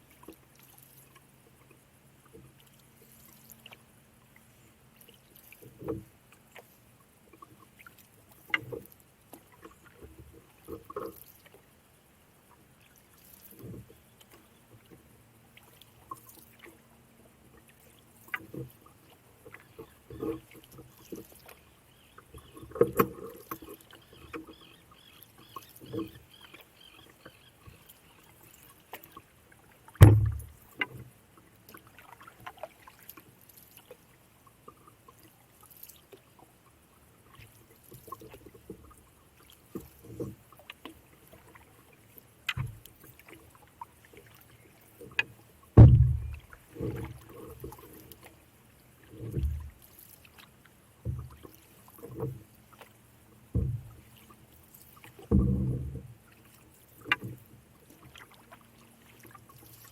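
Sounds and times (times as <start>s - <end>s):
paddle strokes and splashes: 0.0s - 59.9s
knocks: 30.0s - 30.4s, 45.8s - 46.4s
low thump: 30.0s - 30.6s, 45.8s - 46.4s, 53.6s - 53.9s, 55.3s - 56.0s.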